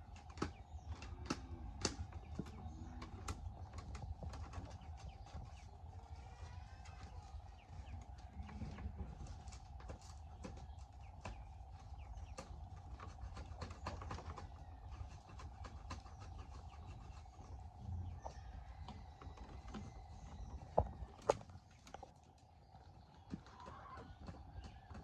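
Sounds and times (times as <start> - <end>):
bamboo strips clicking and tapping: 0.0 - 5.5, 9.4 - 17.5
steady hum: 0.0 - 25.0.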